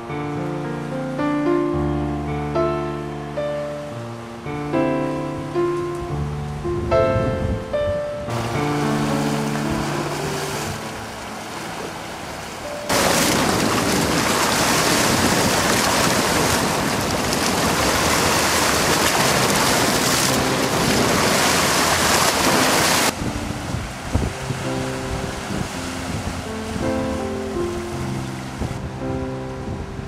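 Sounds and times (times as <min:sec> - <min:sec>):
loud rushing wind or water: 0:00.0 - 0:30.0.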